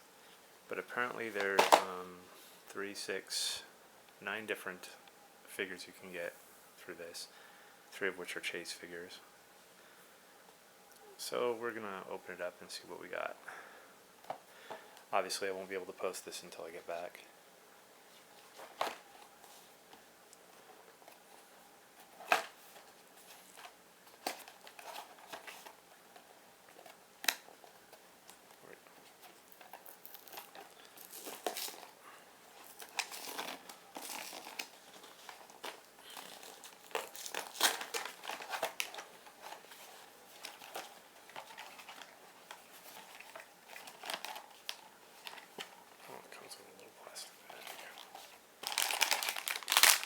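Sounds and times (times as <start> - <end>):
packaging crinkling and tearing: 29.2 - 32.0, 32.6 - 45.8, 47.5 - 50.0.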